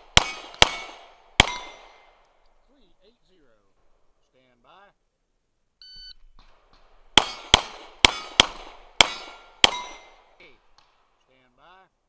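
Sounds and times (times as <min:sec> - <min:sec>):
pistol shots: 0:00.0 - 0:02.3, 0:06.2 - 0:11.2
steel targets ringing: 0:00.2 - 0:02.1, 0:07.2 - 0:10.4
shot timer beep: 0:05.8 - 0:06.2.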